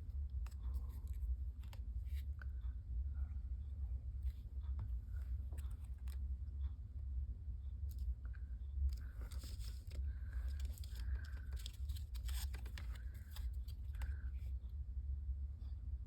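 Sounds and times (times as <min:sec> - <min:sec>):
steady low hum: 0:00.0 - 0:16.0
paper rustling and tapping: 0:08.9 - 0:14.2
paper scraping: 0:09.0 - 0:14.2.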